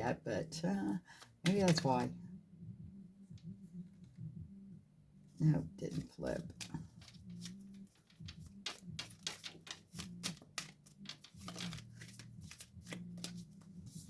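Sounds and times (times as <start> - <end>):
low hum: 2.1 - 5.4.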